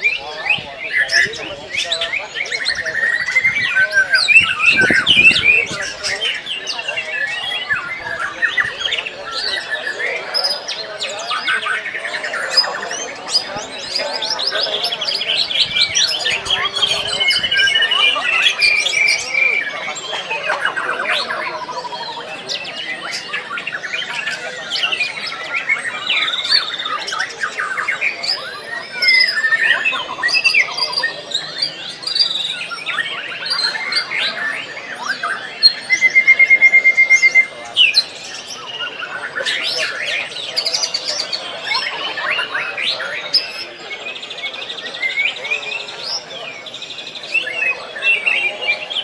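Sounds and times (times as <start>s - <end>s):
birds singing: 0.0s - 49.0s
songbird singing whistles and trills: 30.4s - 38.5s.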